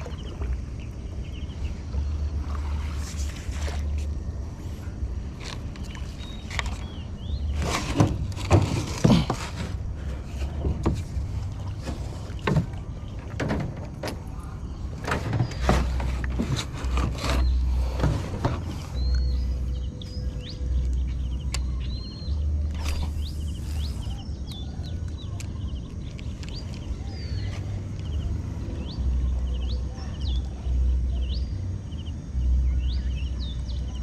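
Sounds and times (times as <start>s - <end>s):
low rumble: 0.0s - 34.0s
paddle strokes splashing in water: 2.4s - 4.1s.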